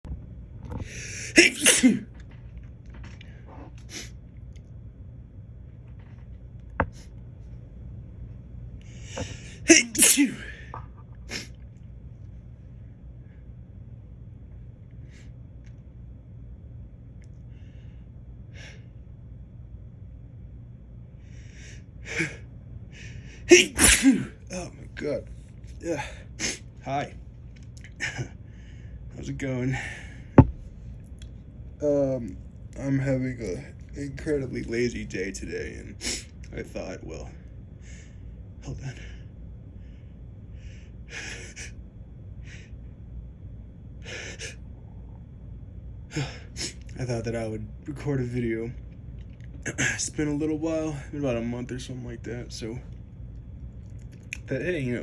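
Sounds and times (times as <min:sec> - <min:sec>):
man's sharp breathy inhalations: 0:00.9 - 0:01.7
man sneezing: 0:01.2 - 0:02.1, 0:09.6 - 0:10.7, 0:23.5 - 0:24.4.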